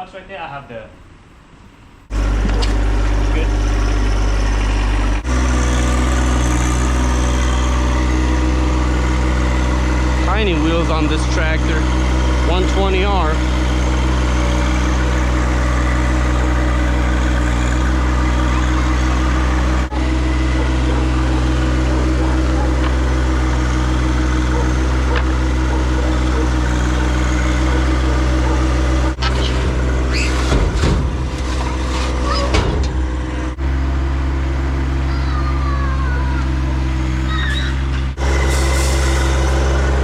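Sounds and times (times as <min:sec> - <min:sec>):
tractor diesel engine running: 0:02.0 - 0:40.0
high squeaks: 0:13.4 - 0:40.0.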